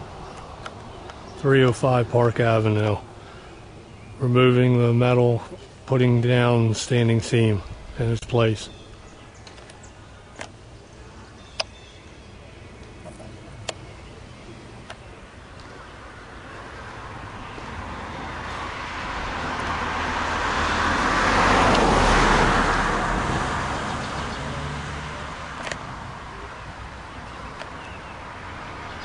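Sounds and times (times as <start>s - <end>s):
motor vehicle passing: 0.0s - 29.0s.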